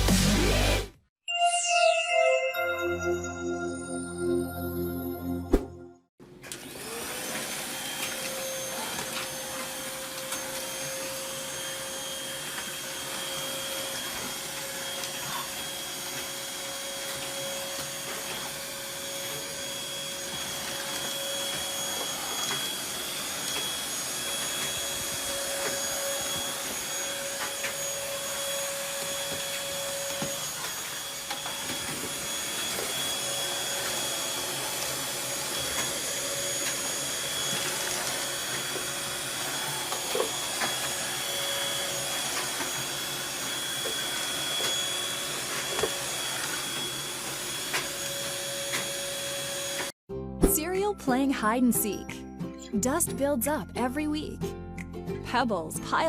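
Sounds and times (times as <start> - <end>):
vacuum cleaner motor whining: 6.3 - 50.0.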